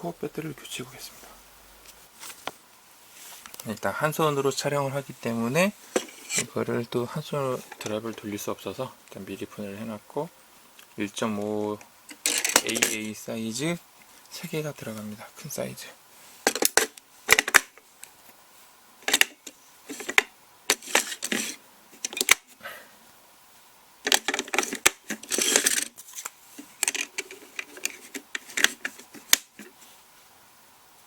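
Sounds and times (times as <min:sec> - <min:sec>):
batteries rattling in plastic compartment: 0:12.2 - 0:13.0, 0:24.1 - 0:26.0, 0:26.6 - 0:29.7.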